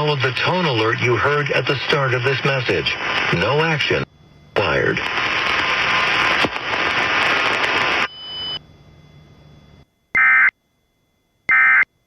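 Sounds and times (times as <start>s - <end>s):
loud static hiss: 0.0s - 8.2s
alert data tone bursts: 10.2s - 10.5s, 11.5s - 11.8s.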